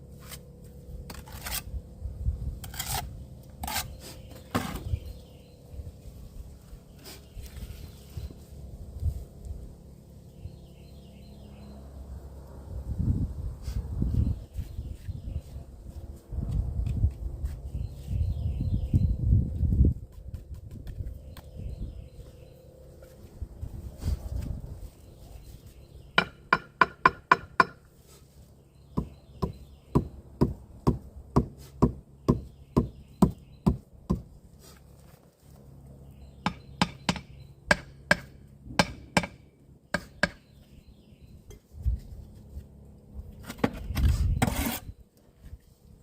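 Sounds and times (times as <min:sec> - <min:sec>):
hammer striking wood: 0:26.2 - 0:27.8, 0:29.0 - 0:34.2, 0:36.5 - 0:40.4.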